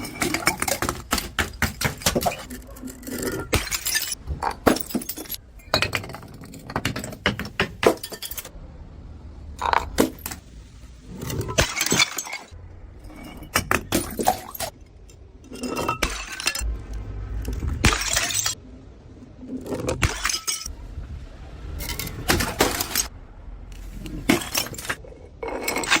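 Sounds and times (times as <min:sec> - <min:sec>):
glass bottles smashing: 0:00.0 - 0:08.5, 0:11.2 - 0:14.8, 0:15.4 - 0:16.6, 0:17.8 - 0:18.6, 0:20.0 - 0:20.7, 0:21.8 - 0:23.1, 0:24.0 - 0:25.0
glass shards clinking: 0:00.0 - 0:08.5, 0:11.2 - 0:16.7, 0:17.8 - 0:18.6, 0:20.0 - 0:20.7, 0:21.8 - 0:23.1, 0:24.0 - 0:26.0.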